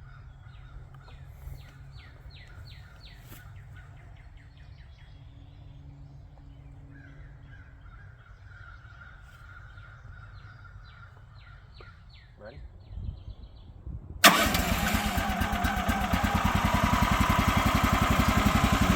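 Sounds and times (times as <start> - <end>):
songbird singing: 0.0 - 14.0.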